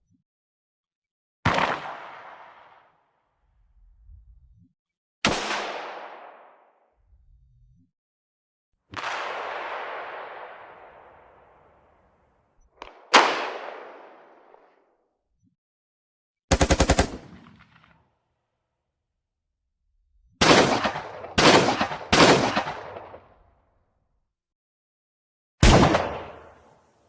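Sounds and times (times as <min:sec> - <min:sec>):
single gunshots: 0:01.5 - 0:02.9, 0:05.2 - 0:06.6, 0:08.9 - 0:11.8, 0:12.8 - 0:14.8, 0:20.4 - 0:23.4, 0:25.6 - 0:26.6
automatic gunfire burst: 0:16.5 - 0:17.5, 0:20.4 - 0:23.0.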